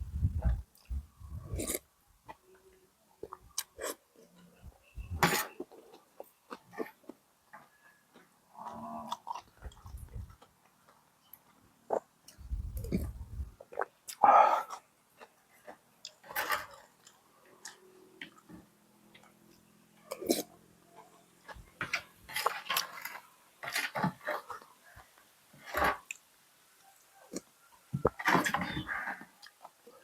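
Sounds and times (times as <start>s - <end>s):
person slurping and chewing soup: 0.1s - 1.8s, 3.2s - 4.0s, 11.9s - 15.3s.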